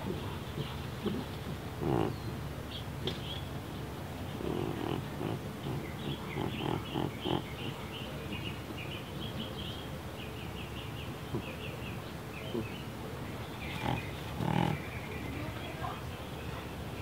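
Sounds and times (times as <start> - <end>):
cat snorting and snoring: 0.0 - 2.2, 4.3 - 7.8, 13.7 - 14.8.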